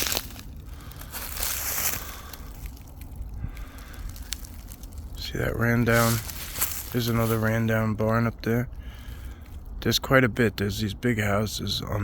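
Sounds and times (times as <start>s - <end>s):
dry leaves crunching and rustling: 0.0s - 7.9s.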